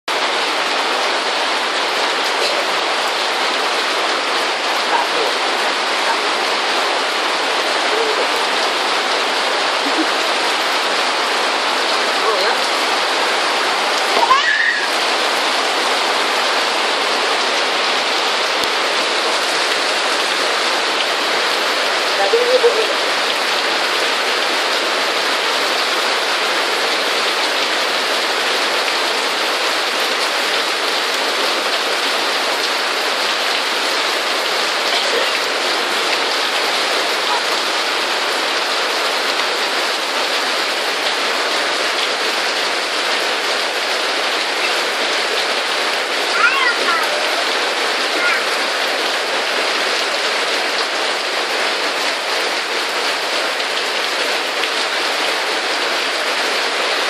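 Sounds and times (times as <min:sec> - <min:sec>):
heavy rain pouring: 0:00.0 - 0:57.0.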